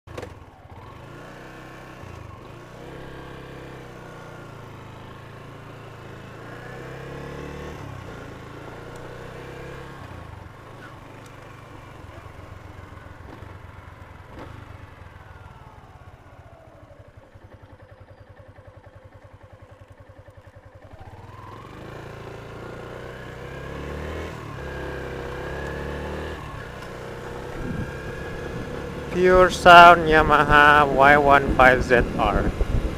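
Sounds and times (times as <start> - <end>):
motorcycle engine revving: 0.1 - 32.9.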